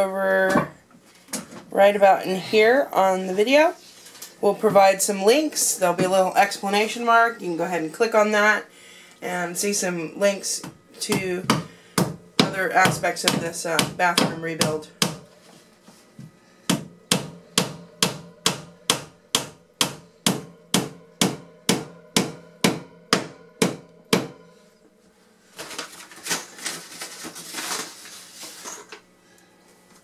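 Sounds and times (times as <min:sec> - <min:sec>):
scraping rustling noise: 0:25.2 - 0:29.0.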